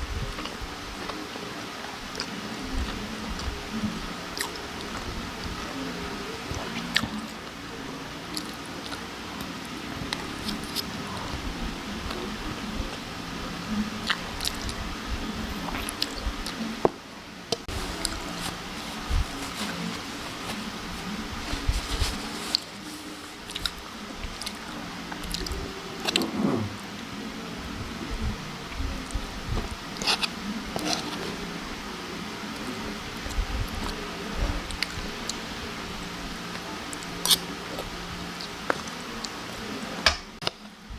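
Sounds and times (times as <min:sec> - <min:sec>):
close chewing mouth sounds: 0:17.7 - 0:26.8
wet mouth sounds: 0:25.3 - 0:26.9.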